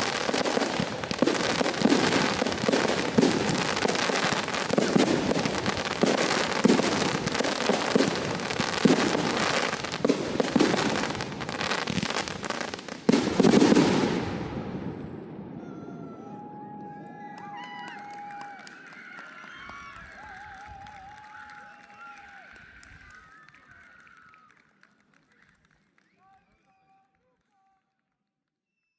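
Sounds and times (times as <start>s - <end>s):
fireworks crackling and banging: 0.0s - 21.8s.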